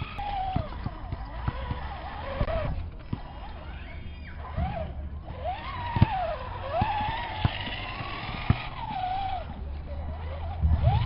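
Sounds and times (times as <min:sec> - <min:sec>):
electric motor whining: 0:00.0 - 0:11.0.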